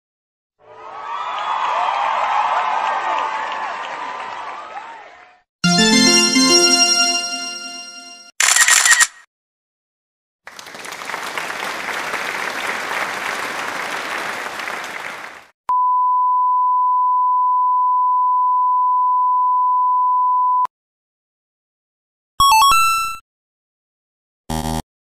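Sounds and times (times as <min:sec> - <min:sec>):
applause: 0:00.7 - 0:05.4, 0:10.5 - 0:15.6
short electronic chime: 0:05.6 - 0:08.3.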